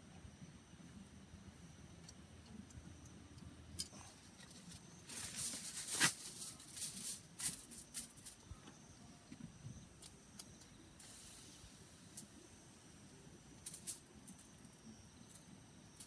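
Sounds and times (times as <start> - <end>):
rustling: 4.2 - 8.4.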